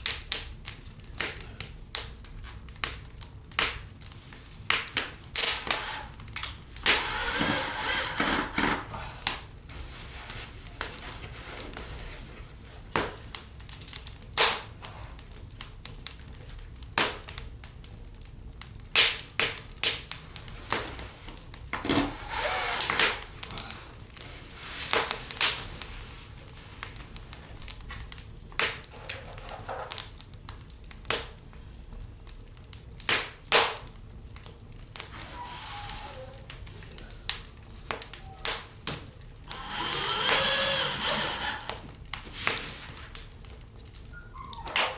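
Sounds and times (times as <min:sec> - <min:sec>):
rough scraping: 0:05.2 - 0:09.0, 0:22.0 - 0:23.0, 0:39.5 - 0:41.8
tool knocks and clicks: 0:06.8 - 0:08.9.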